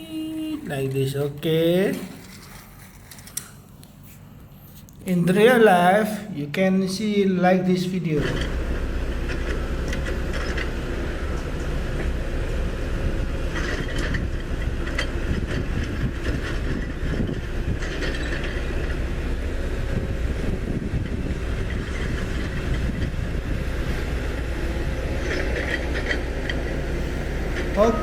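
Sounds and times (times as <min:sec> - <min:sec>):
road roller rumbling: 0:08.2 - 0:28.0.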